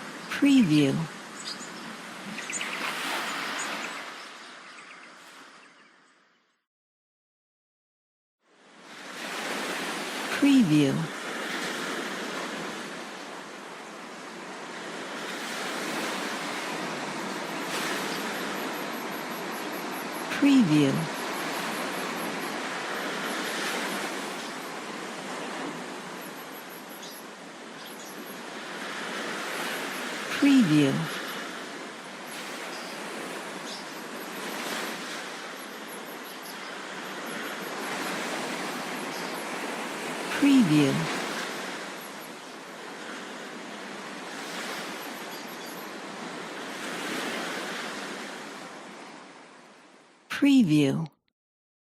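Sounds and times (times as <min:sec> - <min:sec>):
sea waves washing onto shore: 0:08.7 - 0:20.4, 0:21.0 - 0:49.8.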